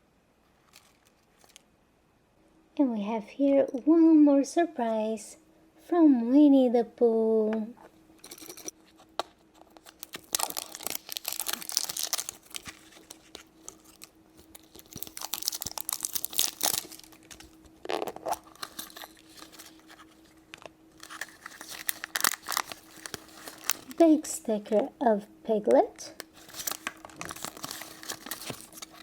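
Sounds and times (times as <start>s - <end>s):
wrapper tearing and crinkling: 9.7s - 20.2s, 21.0s - 24.0s, 26.2s - 29.0s.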